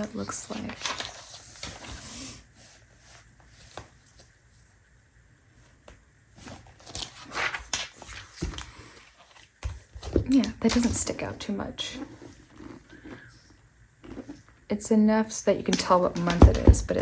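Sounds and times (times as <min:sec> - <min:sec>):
paper pages rustling: 0:00.0 - 0:04.5, 0:05.8 - 0:10.1.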